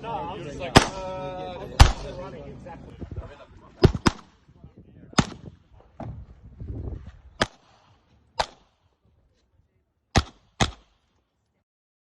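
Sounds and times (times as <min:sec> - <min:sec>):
handgun shots: 0:00.8 - 0:01.0, 0:01.8 - 0:02.2, 0:03.8 - 0:04.3, 0:05.2 - 0:05.5, 0:07.4 - 0:07.8, 0:08.4 - 0:08.8, 0:10.2 - 0:11.0.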